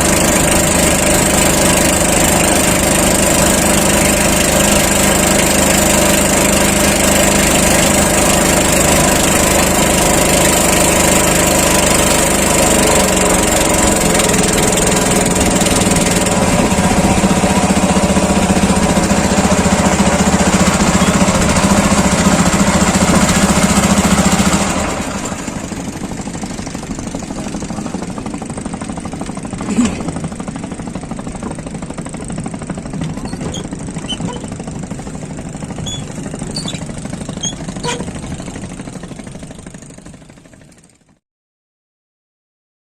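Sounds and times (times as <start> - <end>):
small engine running: 0.0 - 41.2.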